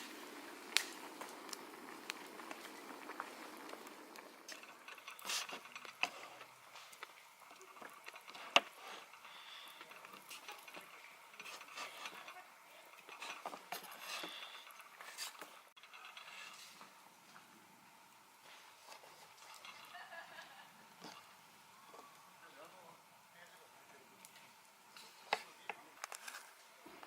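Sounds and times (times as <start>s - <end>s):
small mechanical clicks and rattles: 4.5s - 16.9s.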